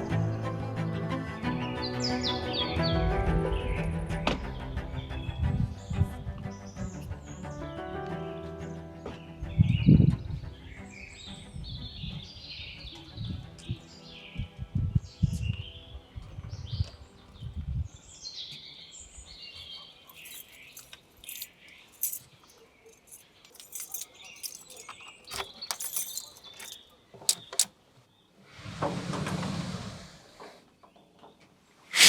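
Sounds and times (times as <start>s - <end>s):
small birds chirping: 9.6s - 28.4s
light clinks and rattles: 20.0s - 27.7s.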